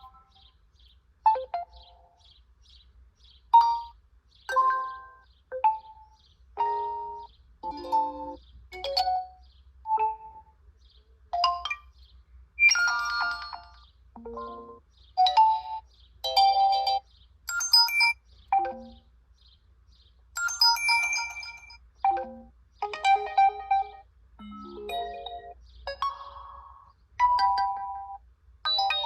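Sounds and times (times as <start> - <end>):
phone ringtone chime phrases: 12.6 - 19.0, 20.4 - 29.0.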